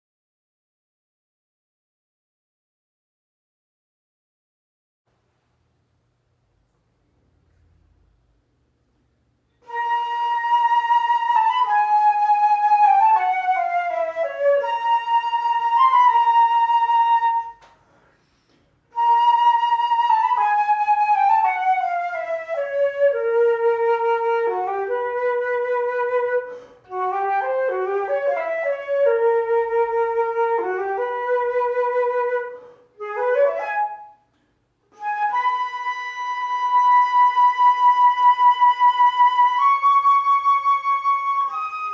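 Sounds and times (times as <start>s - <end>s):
slow flute-like melody: 9.5s - 17.7s, 18.9s - 41.9s.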